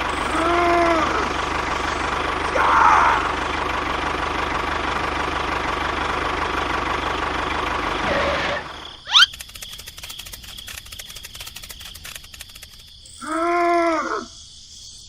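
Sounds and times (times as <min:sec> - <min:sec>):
small engine running: 0:00.0 - 0:12.9
faint rapid ticking: 0:09.1 - 0:13.1.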